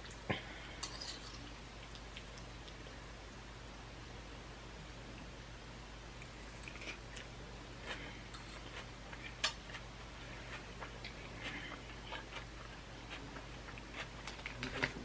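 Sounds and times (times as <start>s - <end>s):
low steady hum: 0.0s - 15.0s
person chewing crunchy vegetables: 6.2s - 15.0s.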